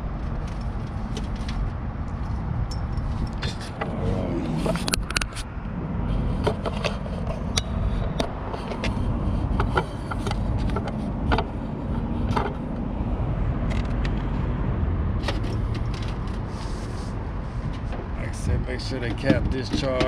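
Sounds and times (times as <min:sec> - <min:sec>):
steady low rumble: 0:00.0 - 0:20.0.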